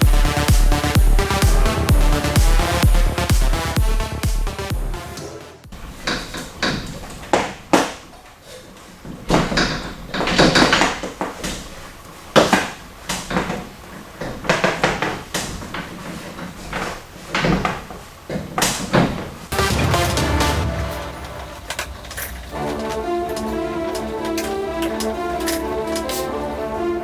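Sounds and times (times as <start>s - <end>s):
sharp raps: 0.0s - 5.8s, 19.5s - 26.7s.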